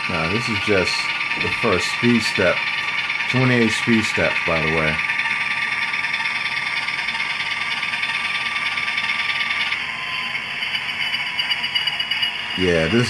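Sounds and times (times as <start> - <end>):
model locomotive diesel engine sound: 0.0 - 13.0
model train rattle: 0.0 - 13.0.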